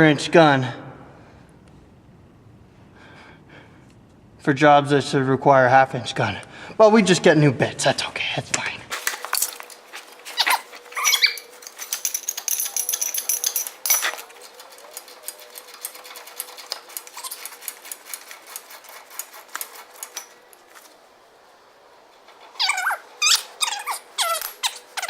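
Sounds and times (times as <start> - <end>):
hand tools clicking and clinking: 8.9 - 20.9, 22.6 - 25.0
squeaky sounds: 9.5 - 20.3, 22.3 - 25.0.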